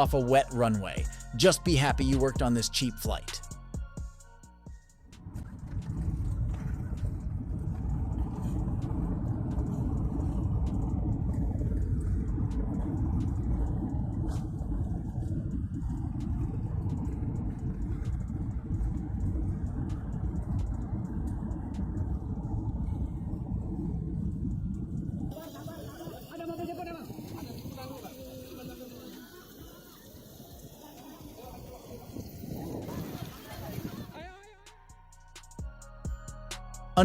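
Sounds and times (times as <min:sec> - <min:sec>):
jet rumbling down runway: 0:05.1 - 0:34.4.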